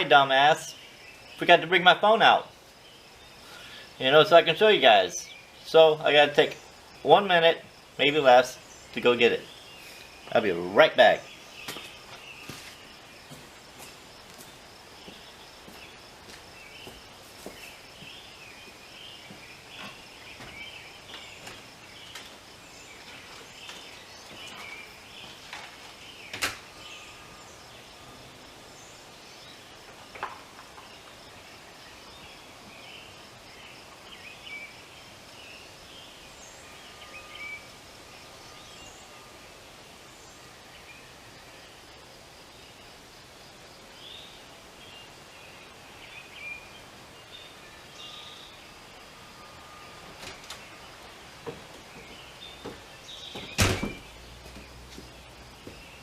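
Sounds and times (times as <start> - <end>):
birds chirping: 0.0 - 41.9, 43.9 - 56.0.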